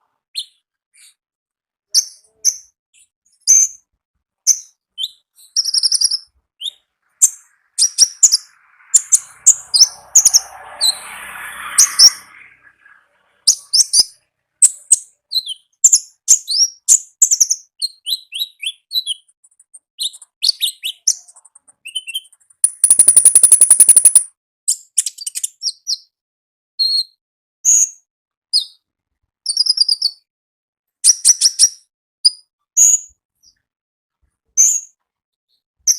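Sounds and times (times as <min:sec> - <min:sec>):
songbird chirping and whistling: 0:00.3 - 0:01.2, 0:04.5 - 0:11.0, 0:11.9 - 0:19.3, 0:20.0 - 0:21.2, 0:21.8 - 0:26.1
fast buzzy bird trill: 0:22.6 - 0:24.2.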